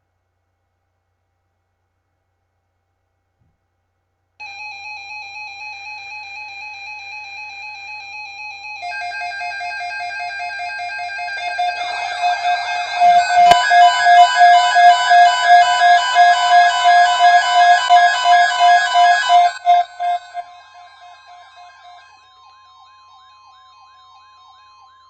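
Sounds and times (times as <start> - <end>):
electronic instrumental music: 8.4 - 25.0.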